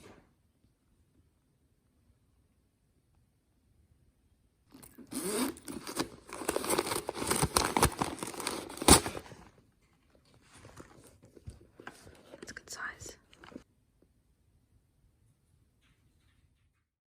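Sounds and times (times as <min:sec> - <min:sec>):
rustling handling noise: 0:04.7 - 0:13.6.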